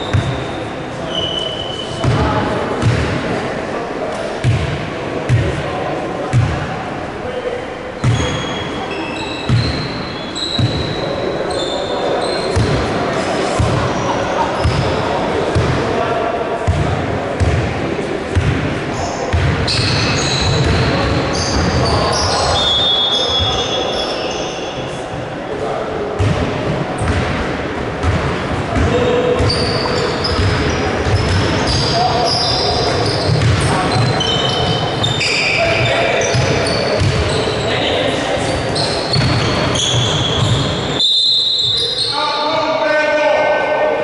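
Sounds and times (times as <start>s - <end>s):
shoes squeaking on floor: 0.0s - 2.3s, 8.0s - 12.9s, 13.5s - 15.1s, 19.0s - 24.8s, 28.8s - 42.6s
hall background noise: 0.0s - 44.0s
spectators chattering: 0.0s - 44.0s
basketball thumping on court: 2.0s - 3.2s, 15.5s - 15.8s, 33.3s - 34.2s, 36.4s - 37.3s.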